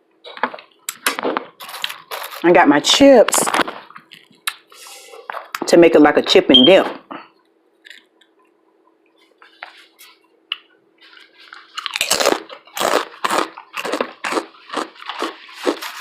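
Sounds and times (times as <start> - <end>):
loud chewing of crunchy chips: 1.6 - 2.6, 7.8 - 8.3, 11.0 - 16.0.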